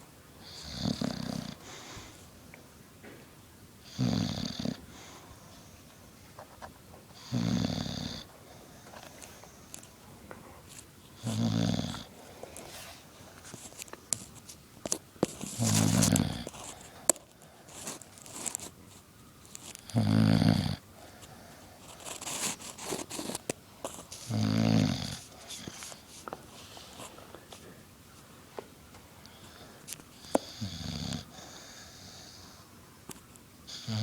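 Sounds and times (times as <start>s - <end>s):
dog snoring: 0.4s - 2.1s, 3.8s - 5.7s, 7.1s - 9.8s, 11.2s - 12.5s, 15.2s - 16.9s, 19.6s - 20.9s, 21.9s - 26.1s, 29.3s - 32.6s, 33.7s - 34.0s.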